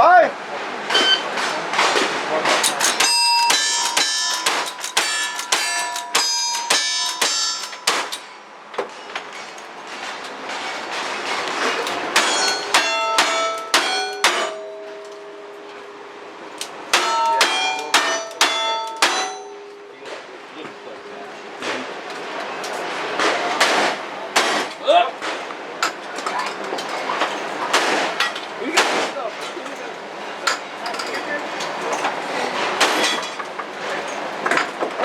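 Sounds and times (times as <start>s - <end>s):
steel target ringing: 2.6s - 9.8s, 11.6s - 22.4s.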